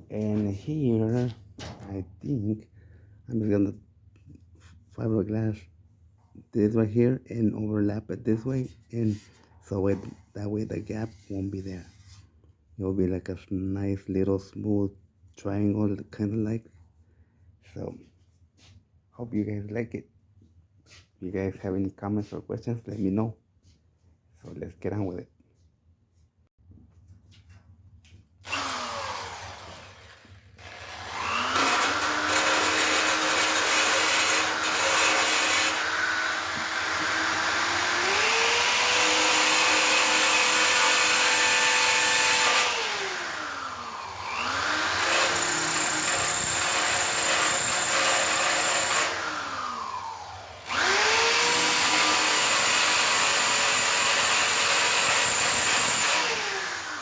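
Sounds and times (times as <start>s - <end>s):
rotary grinding tool whining: 28.4s - 57.0s.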